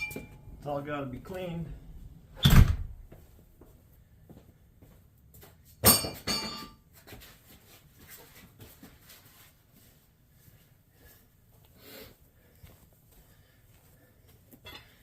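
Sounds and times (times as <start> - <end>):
ringing metallic clank: 0.0 - 0.5, 5.8 - 6.8.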